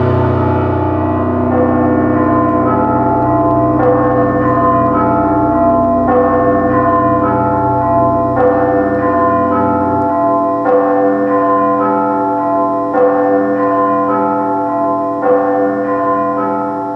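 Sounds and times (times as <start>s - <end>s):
low drone: 0.0s - 10.7s
bell-like chimes: 0.0s - 16.9s.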